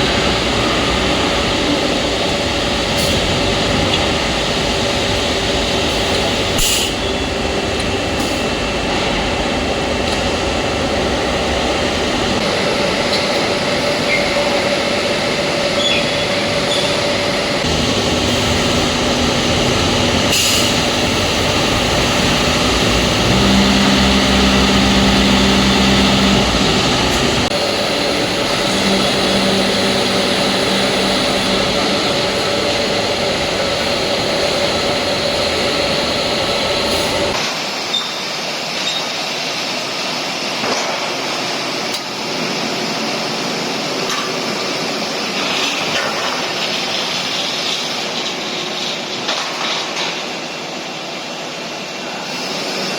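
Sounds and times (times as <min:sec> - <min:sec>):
deeper hum: 0:00.0 - 0:37.4
hydraulic press droning: 0:00.0 - 0:39.1.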